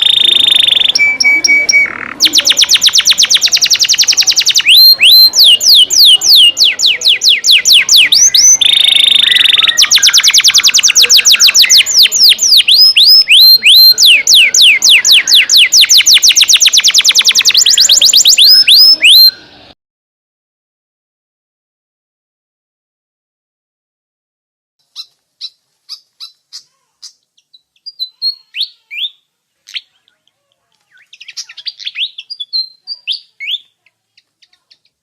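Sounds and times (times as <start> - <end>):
buzzy bird trill: 0.0 - 19.6, 24.8 - 29.2
songbird whistled notes: 0.0 - 19.6, 30.9 - 33.7.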